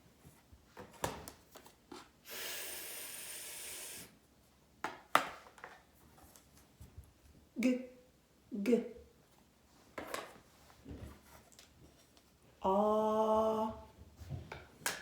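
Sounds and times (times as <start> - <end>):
woman making hissing sound: 2.2 - 4.2.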